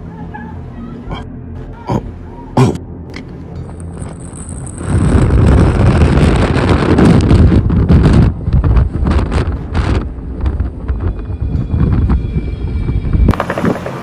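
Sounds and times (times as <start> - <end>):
wind buffeting microphone: 3.5 - 14.0.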